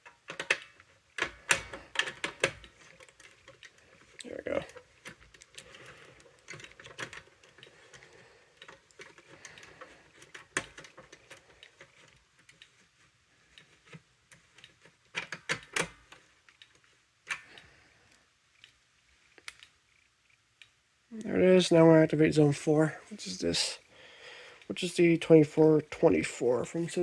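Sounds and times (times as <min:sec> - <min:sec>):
irregular clicks and taps: 0:00.0 - 0:20.8.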